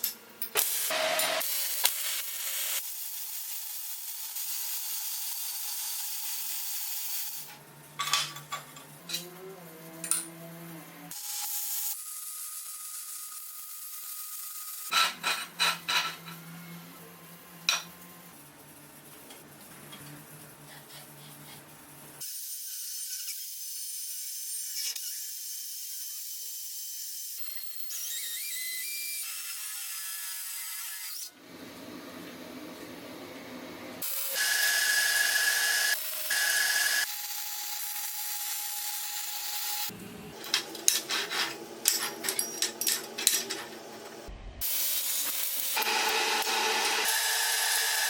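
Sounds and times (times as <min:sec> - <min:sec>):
high-pitched tool running: 0:34.0 - 0:40.0, 0:44.6 - 0:48.0
power tools running: 0:34.0 - 0:40.4, 0:44.6 - 0:48.0.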